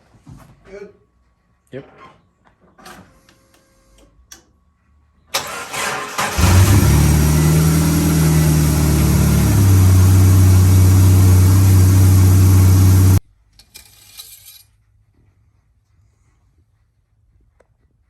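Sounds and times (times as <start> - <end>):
car engine idling: 5.4 - 13.2.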